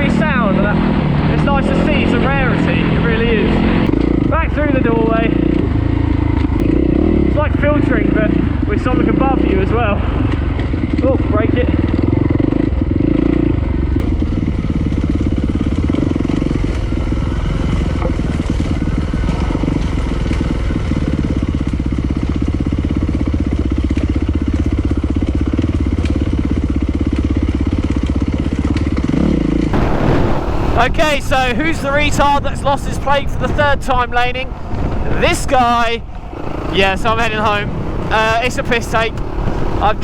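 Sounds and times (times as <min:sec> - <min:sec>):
motorcycle engine running: 0:00.0 - 0:40.0
wind noise: 0:29.7 - 0:40.0.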